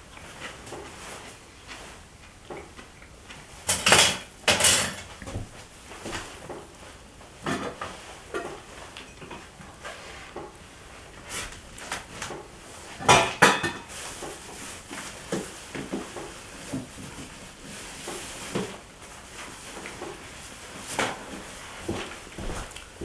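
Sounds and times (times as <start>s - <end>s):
dishes and cutlery clinking: 3.7s - 5.4s, 13.0s - 14.0s.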